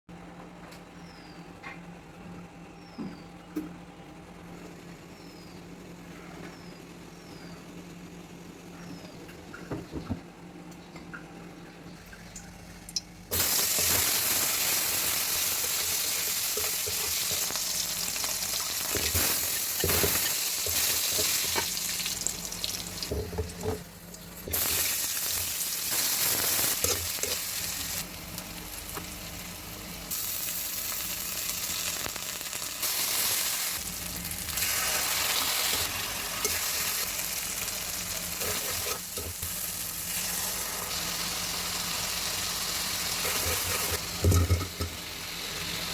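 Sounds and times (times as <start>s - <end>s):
food sizzling in hot oil: 13.3s - 23.6s, 24.2s - 45.9s.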